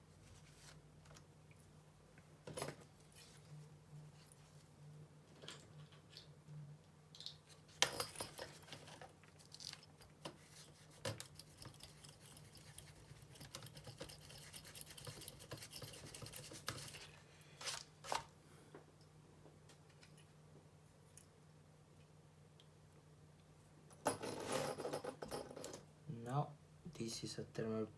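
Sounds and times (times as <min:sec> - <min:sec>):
faint steady hum: 0:00.0 - 0:27.9
light clicks of small parts: 0:21.1 - 0:22.8.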